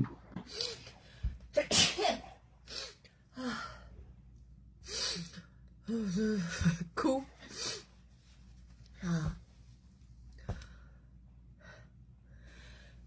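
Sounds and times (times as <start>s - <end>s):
person sneezing: 1.6s - 2.9s.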